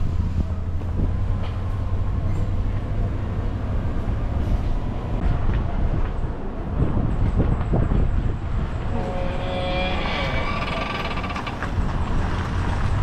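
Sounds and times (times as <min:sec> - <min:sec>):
vehicle engine and road noise: 0:00.0 - 0:13.0.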